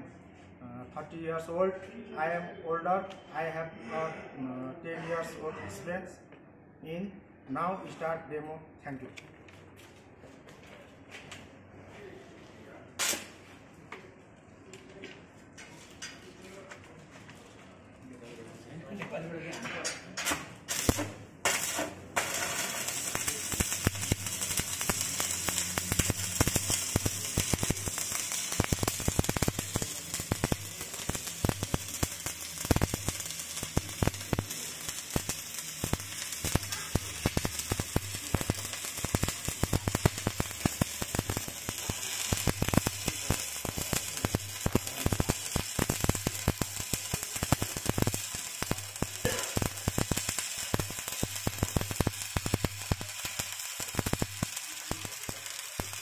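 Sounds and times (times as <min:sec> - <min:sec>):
welding arc crackling and sizzling: 0:13.0 - 0:13.5, 0:19.3 - 0:56.0.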